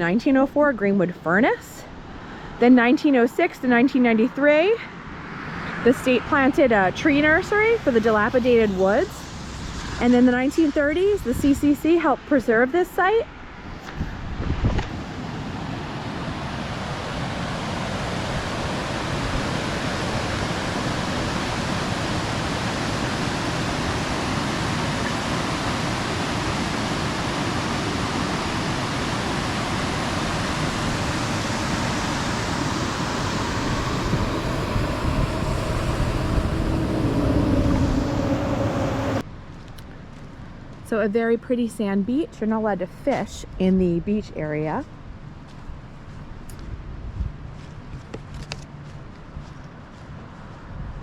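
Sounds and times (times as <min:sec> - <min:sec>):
water rushing over dam: 0:14.9 - 0:39.2.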